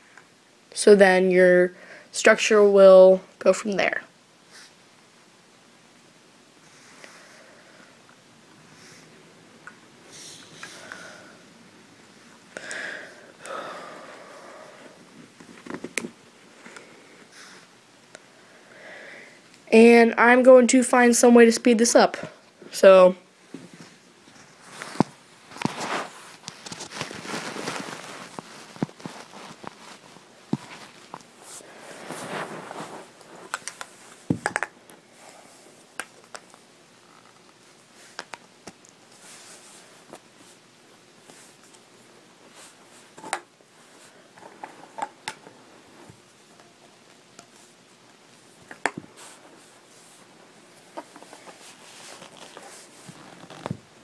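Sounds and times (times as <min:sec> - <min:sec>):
rustling handling noise: 0:23.5 - 0:54.0.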